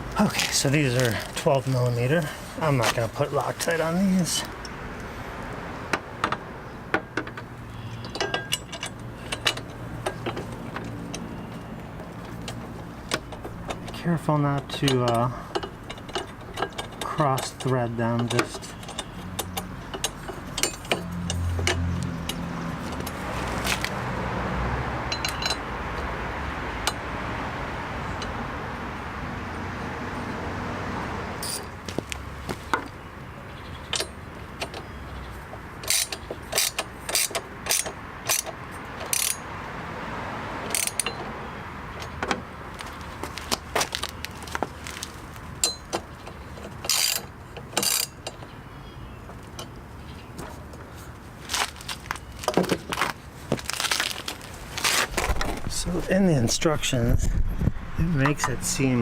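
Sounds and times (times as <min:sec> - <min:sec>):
ratchet wrench clicking: 0:35.8 - 0:38.5, 0:39.1 - 0:39.4.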